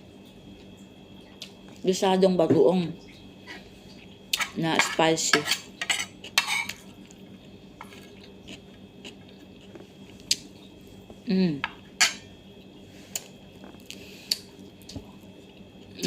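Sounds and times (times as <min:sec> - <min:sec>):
cutlery clinking on a plate: 0:12.0 - 0:12.2.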